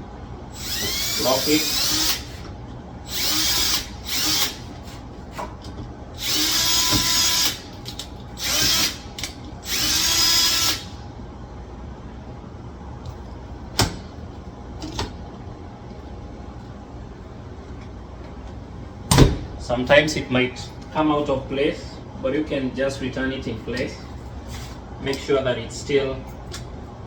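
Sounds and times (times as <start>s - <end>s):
power drill driving screws: 0.6s - 2.4s, 3.1s - 4.6s, 6.2s - 7.7s, 8.4s - 10.9s.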